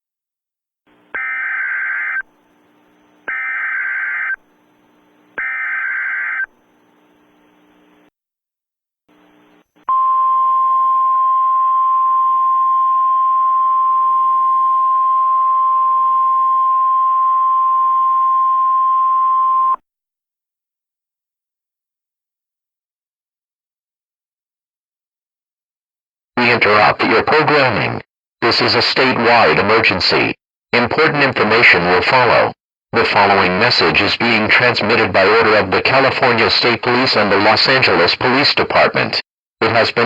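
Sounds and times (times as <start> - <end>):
harsh electronic data bursts: 1.2 - 2.3, 3.3 - 4.4, 5.3 - 6.5
steady single-pitch alert tone: 3.3 - 4.4, 5.4 - 6.5.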